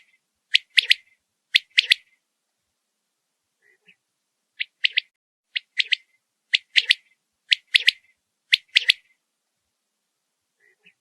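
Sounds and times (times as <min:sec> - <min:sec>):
quail calling: 0:00.0 - 0:02.2, 0:03.6 - 0:04.0, 0:04.6 - 0:09.2, 0:10.6 - 0:11.0.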